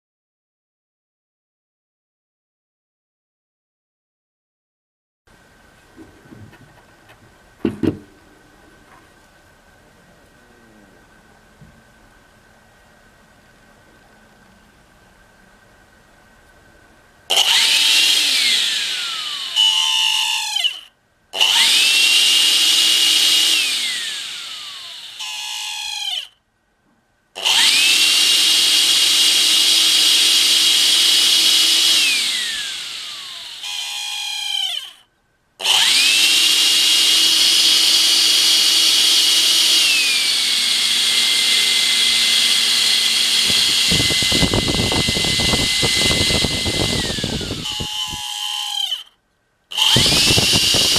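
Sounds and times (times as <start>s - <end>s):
rough low motor noise: 5.3s - 36.2s, 38.2s - 48.9s, 49.7s - 50.9s
vacuum motor whine: 17.3s - 20.8s, 21.4s - 26.3s, 27.4s - 34.9s, 35.6s - 49.0s, 49.7s - 50.9s.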